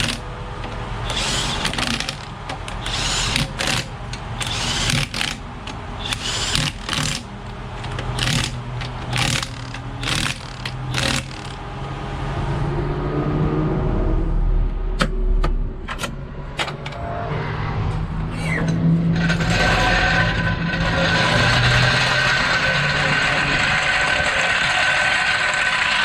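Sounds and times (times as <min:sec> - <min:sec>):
impact wrench bursts: 0:00.0 - 0:11.6.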